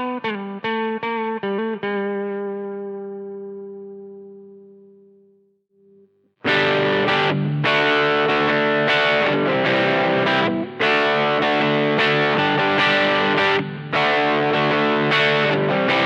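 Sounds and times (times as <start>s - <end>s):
distorted electric guitar riff: 0.0s - 4.7s, 6.4s - 16.0s
electric guitar note ringing: 5.9s - 16.0s.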